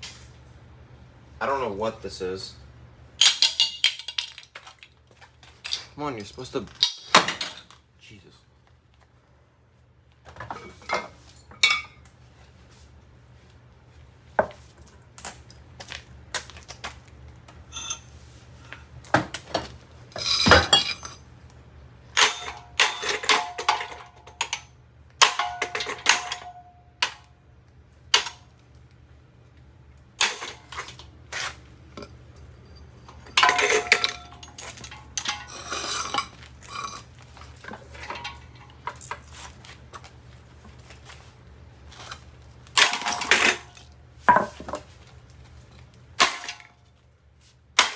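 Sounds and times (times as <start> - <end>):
ceiling fan low hum: 0.0 - 47.9
objects clattering against fan blades: 3.2 - 7.8, 14.8 - 21.3, 22.1 - 27.3, 30.1 - 47.0.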